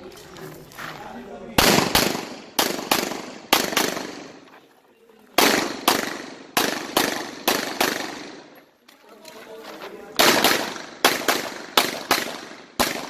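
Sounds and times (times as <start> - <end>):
pistol shots with ringing echo: 1.6 - 4.5, 5.4 - 8.6, 10.2 - 13.0.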